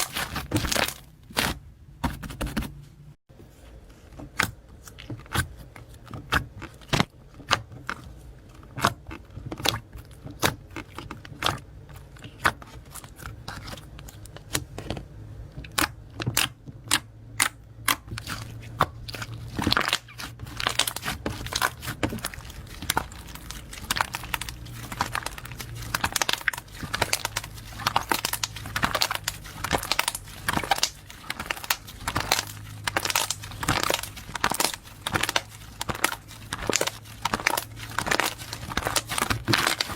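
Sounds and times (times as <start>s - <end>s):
slime clicking and popping: 15.7s - 39.9s.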